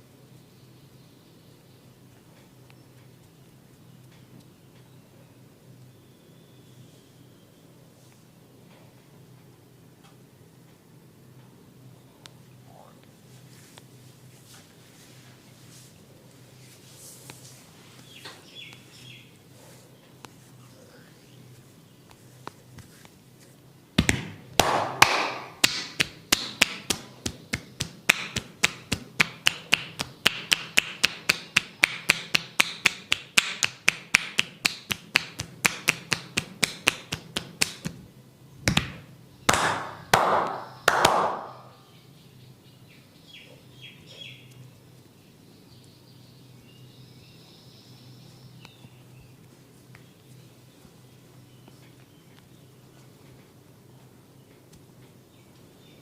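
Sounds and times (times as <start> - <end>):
hands tapping on head: 24.0 - 38.0, 38.7 - 41.7.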